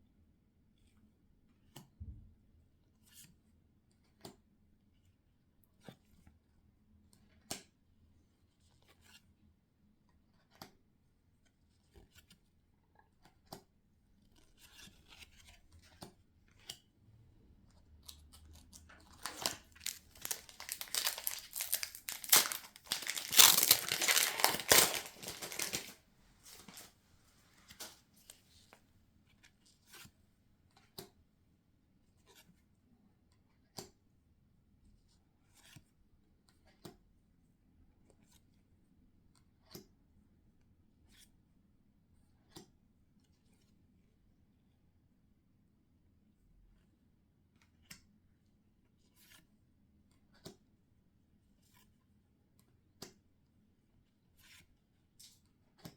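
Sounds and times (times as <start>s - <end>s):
foil wrapper tearing and crinkling: 18.5s - 26.9s, 27.7s - 28.0s.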